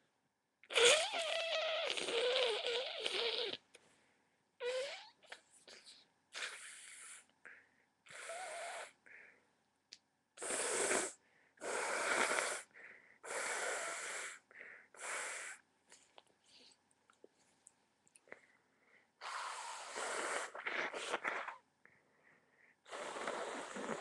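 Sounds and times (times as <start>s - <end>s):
person blowing nose: 0.7s - 3.6s, 4.6s - 5.2s, 6.4s - 7.2s, 8.1s - 9.0s, 10.4s - 14.4s, 15.0s - 15.6s, 19.2s - 21.6s, 22.9s - 24.0s.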